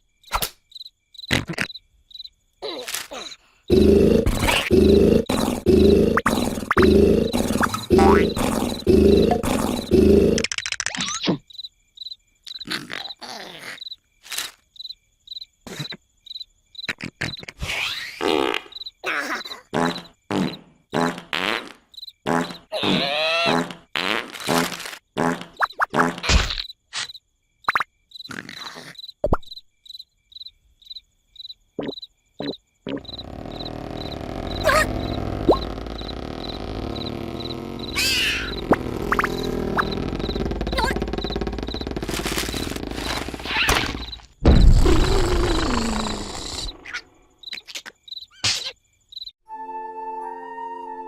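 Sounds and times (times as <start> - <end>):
crickets chirping: 0.0 - 17.4, 18.2 - 21.1, 21.8 - 22.7, 26.6 - 49.4
cartoon snoring: 3.7 - 10.5, 32.4 - 47.0
comic squeaks and plops: 4.2 - 11.4, 22.3 - 29.5, 31.8 - 48.8
low rumbling: 33.1 - 43.5.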